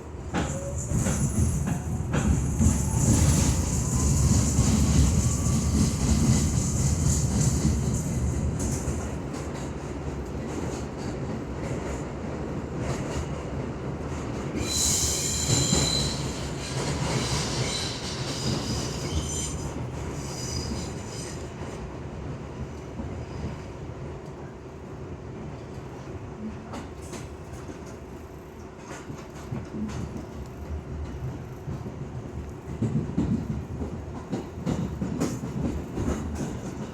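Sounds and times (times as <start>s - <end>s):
subway train rumbling: 0.0s - 36.9s
high-pitched wheel squeal: 14.6s - 21.4s.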